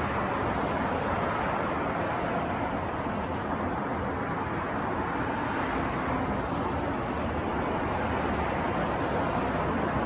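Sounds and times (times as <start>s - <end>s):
city traffic: 0.0s - 10.0s
wind: 0.0s - 10.0s.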